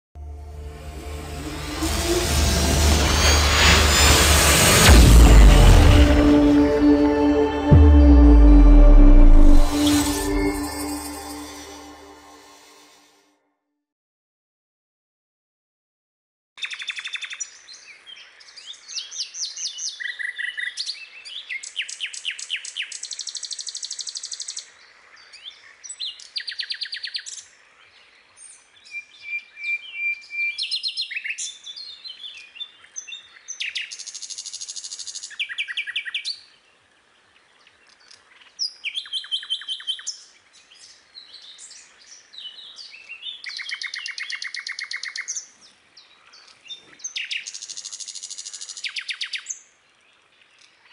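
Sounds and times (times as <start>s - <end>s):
birds singing and trilling: 37.3s - 50.9s.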